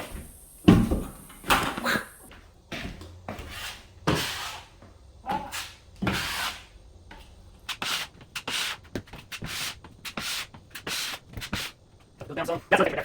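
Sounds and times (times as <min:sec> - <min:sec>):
drywall knife scraping compound: 0:03.3 - 0:04.8, 0:05.4 - 0:11.8.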